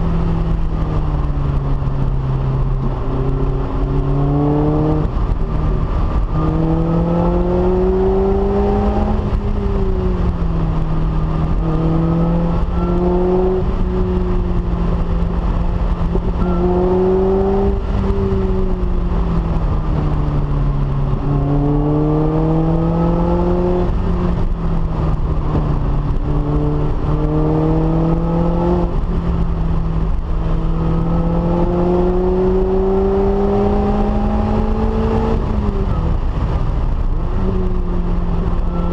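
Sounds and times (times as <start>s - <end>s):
car engine revving hard: 6.2s - 9.3s, 21.3s - 23.9s, 26.4s - 29.1s, 30.6s - 35.5s.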